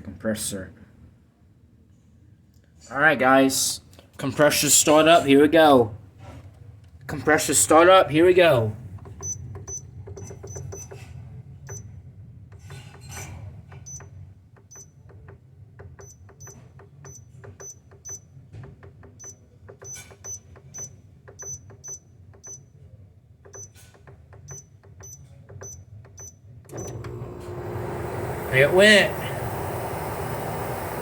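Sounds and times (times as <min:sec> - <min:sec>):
compressor starting: 0:26.7 - 0:31.0.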